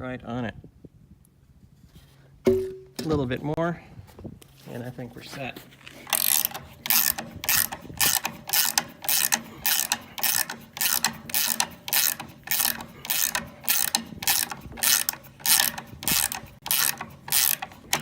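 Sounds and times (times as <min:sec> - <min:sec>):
ratchet wrench clicking: 0:06.0 - 0:18.0.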